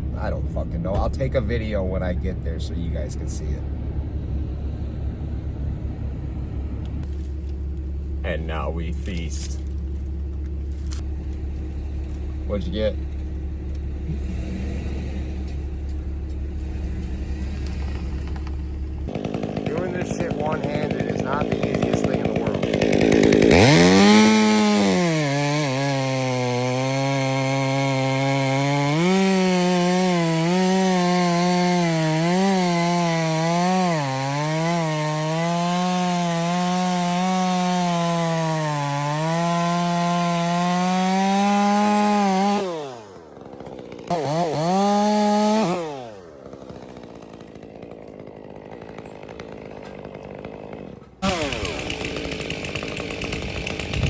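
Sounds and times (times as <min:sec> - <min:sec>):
chainsaw cutting wood: 0:07.0 - 0:54.0.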